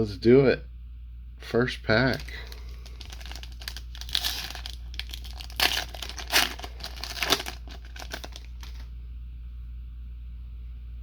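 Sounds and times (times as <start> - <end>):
wrapper tearing and crinkling: 2.1 - 8.9.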